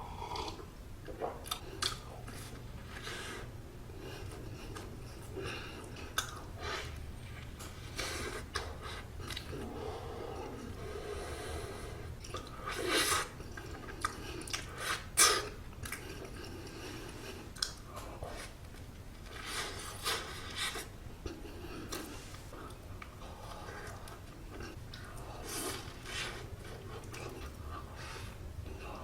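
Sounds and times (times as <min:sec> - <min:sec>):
chewing soft buns: 0:00.0 - 0:29.0
wet mouth clicks and smacks: 0:00.3 - 0:02.1, 0:06.1 - 0:06.4.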